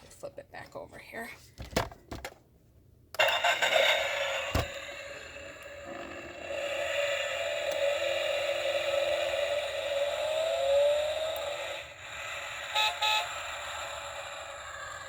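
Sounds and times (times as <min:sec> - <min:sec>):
car engine revving from small speaker: 0:03.8 - 0:15.0
car horn toots: 0:12.6 - 0:14.5.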